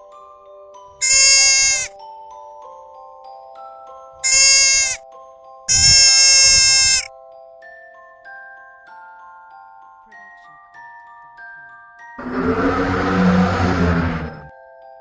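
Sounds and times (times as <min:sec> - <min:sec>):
soft background music with chimes: 0:00.0 - 0:01.0, 0:01.9 - 0:04.3, 0:05.0 - 0:05.7, 0:07.1 - 0:12.2, 0:14.5 - 0:15.0
animal bleating: 0:01.0 - 0:01.9, 0:04.2 - 0:05.0, 0:05.7 - 0:07.1, 0:12.2 - 0:14.5.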